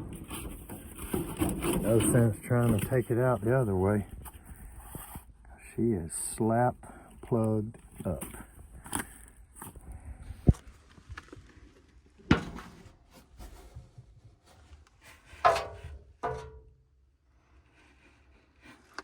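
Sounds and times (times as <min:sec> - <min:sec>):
air filter rubbing: 0:00.0 - 0:05.3
sharp thunks on sheet metal: 0:15.5 - 0:16.7.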